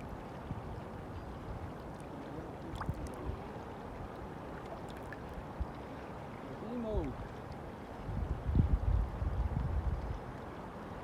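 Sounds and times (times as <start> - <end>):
small water splashes: 0.0 - 8.4.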